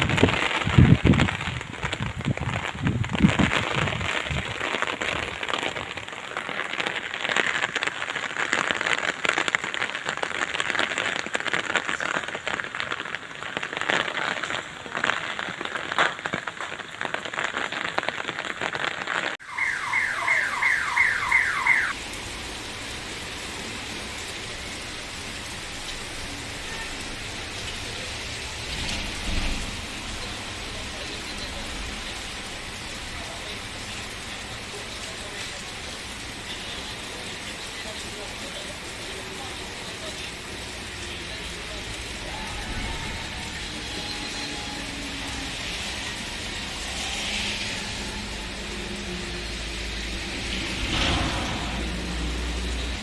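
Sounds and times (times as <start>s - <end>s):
rain spattering close: 0.0s - 18.6s, 19.3s - 53.0s
steady rain hiss: 0.0s - 53.0s
car alarm rising chirps: 19.4s - 22.0s.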